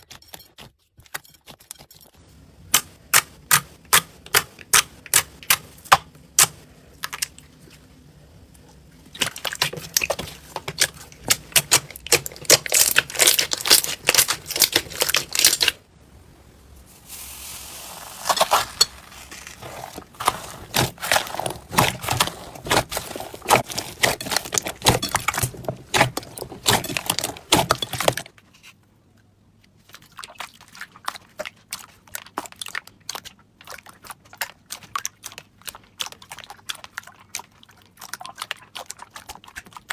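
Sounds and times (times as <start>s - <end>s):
slime crackling and popping: 9.2s - 15.8s.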